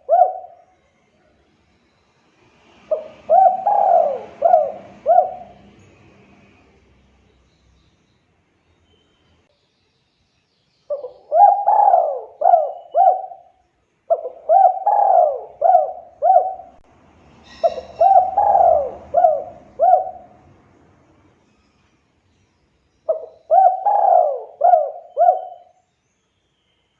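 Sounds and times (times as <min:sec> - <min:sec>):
dove cooing: 0:00.0 - 0:00.8, 0:02.8 - 0:06.0, 0:10.9 - 0:13.5, 0:14.1 - 0:16.8, 0:17.5 - 0:20.5, 0:23.1 - 0:25.8
high bird chirp: 0:07.0 - 0:16.8, 0:17.4 - 0:20.3.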